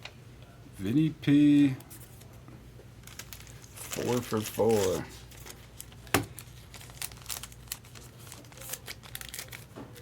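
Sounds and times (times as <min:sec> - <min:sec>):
packaging crinkling and rustling: 0:03.0 - 0:10.0.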